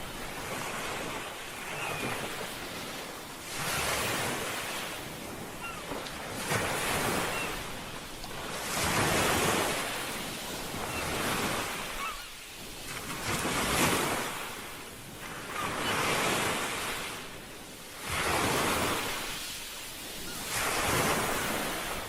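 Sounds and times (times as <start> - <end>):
ocean waves washing on shore: 0.0 - 22.0.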